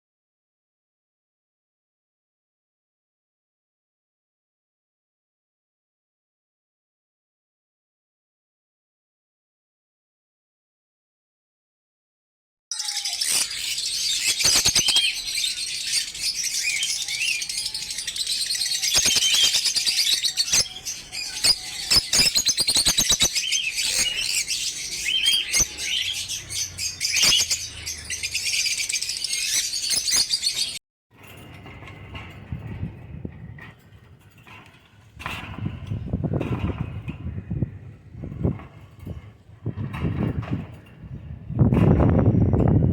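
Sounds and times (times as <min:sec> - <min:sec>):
lovebirds chirping and squeaking: 0:12.7 - 0:30.8, 0:31.4 - 0:42.6.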